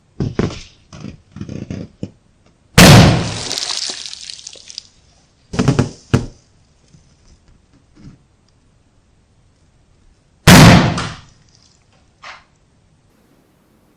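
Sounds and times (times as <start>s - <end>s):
soft small sounds: 3.4s - 8.7s.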